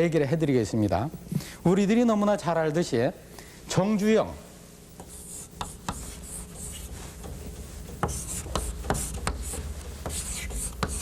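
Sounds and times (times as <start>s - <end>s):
writing taps and scrapes on board: 5.0s - 11.0s.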